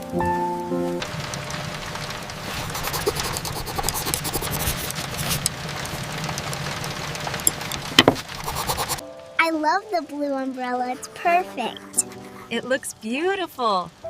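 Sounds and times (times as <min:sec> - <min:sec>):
soft music: 0:00.0 - 0:01.5, 0:09.0 - 0:14.0
steady hiss with crackling ticks: 0:00.0 - 0:14.0.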